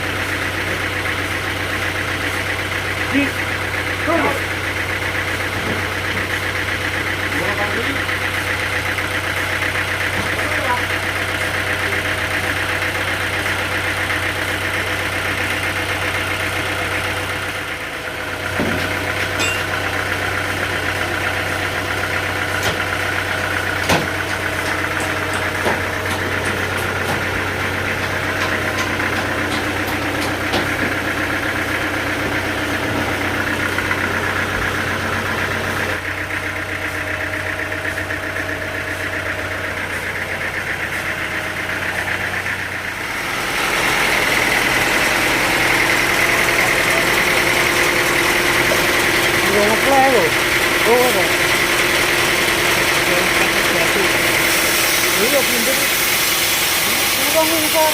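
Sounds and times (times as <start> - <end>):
sawmill engine running: 0.0 - 57.9
sharp knocks: 23.8 - 27.3.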